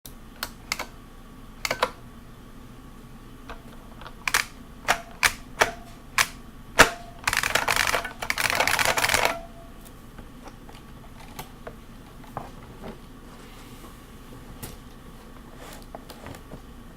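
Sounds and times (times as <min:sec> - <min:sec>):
clicky keyboard typing: 0:00.4 - 0:00.9, 0:07.2 - 0:09.4.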